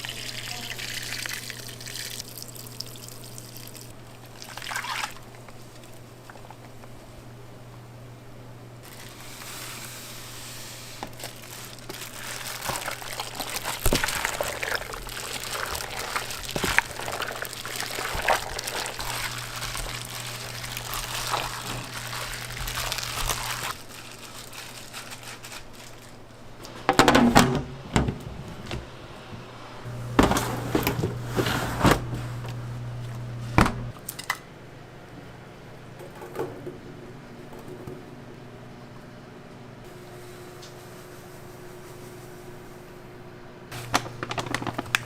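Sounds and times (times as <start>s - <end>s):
liquid pouring and sloshing: 0.0s - 6.5s, 11.1s - 26.2s
steady low hum: 26.2s - 36.0s
small clicks and crinkles: 43.8s - 45.0s.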